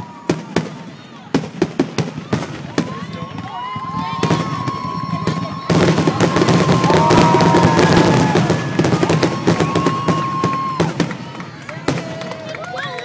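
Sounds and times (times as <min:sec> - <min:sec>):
fireworks bangs and crackling: 0:00.0 - 0:13.0.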